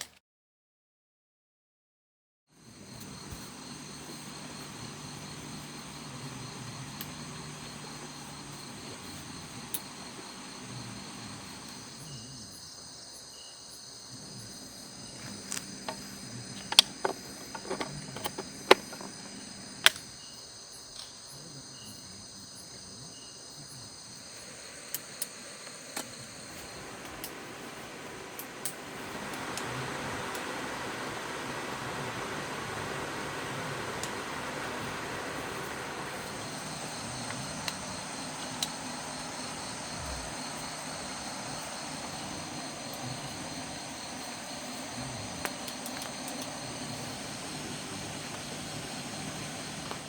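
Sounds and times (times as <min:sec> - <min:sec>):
crickets chirping: 0:02.5 - 0:50.0
sharp clicks or knocks: 0:16.6 - 0:20.0.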